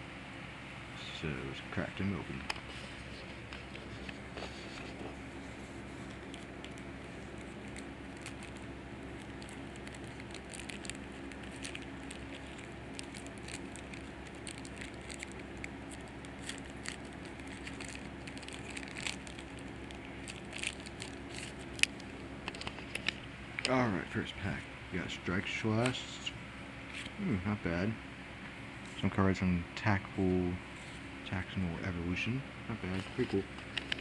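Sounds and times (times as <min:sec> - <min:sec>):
foil wrapper crinkling: 0:02.6 - 0:23.3.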